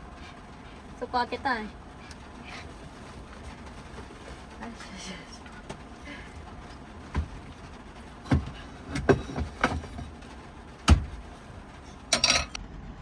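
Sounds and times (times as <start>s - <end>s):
knocks and clunks of handling: 8.2s - 10.2s, 10.8s - 11.2s
bright clatter: 12.1s - 12.6s.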